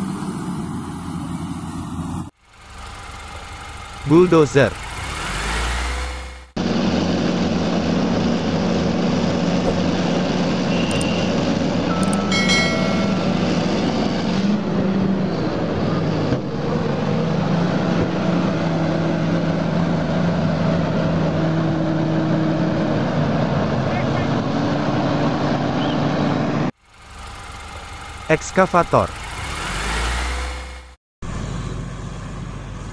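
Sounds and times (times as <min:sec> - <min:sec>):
bulldozer diesel engine running: 0:31.2 - 0:32.9.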